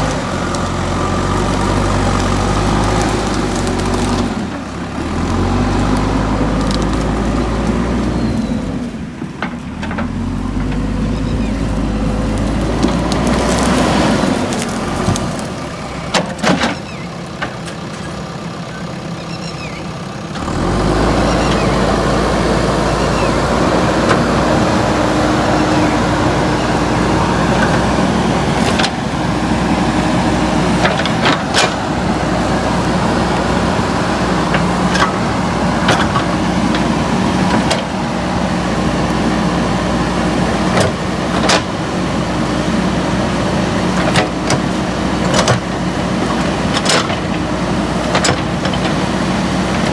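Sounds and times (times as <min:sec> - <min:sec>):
diesel engine running: 0:00.0 - 0:49.9
sharp knocks and cracks: 0:12.3 - 0:16.8, 0:30.8 - 0:31.8, 0:35.8 - 0:36.9, 0:40.7 - 0:41.7, 0:44.0 - 0:45.7, 0:46.7 - 0:47.4, 0:48.0 - 0:49.0.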